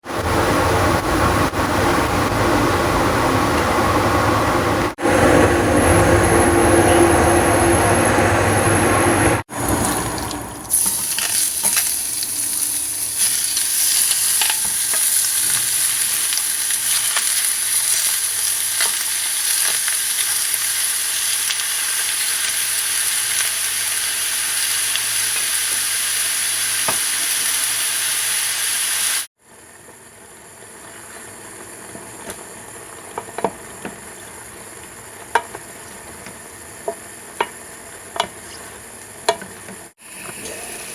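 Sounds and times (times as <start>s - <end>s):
chicken frying in oil: 9.5s - 29.3s.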